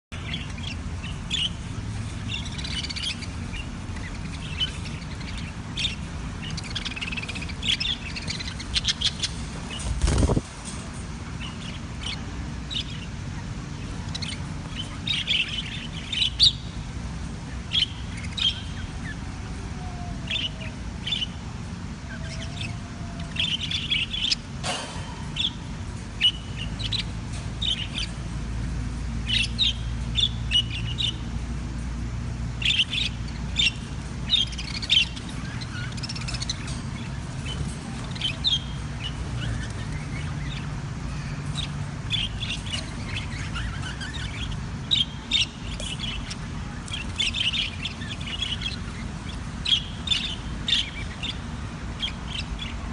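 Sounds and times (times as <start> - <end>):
steady low hum: 0.1 - 52.9
budgerigars chirping: 0.2 - 52.9.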